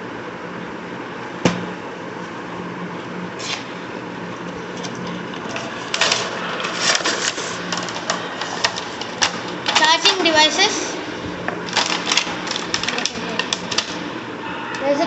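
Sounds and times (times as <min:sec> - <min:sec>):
steady background hum: 0:00.0 - 0:15.0
plastic packaging clicks and rustles: 0:04.8 - 0:10.2, 0:11.6 - 0:14.1.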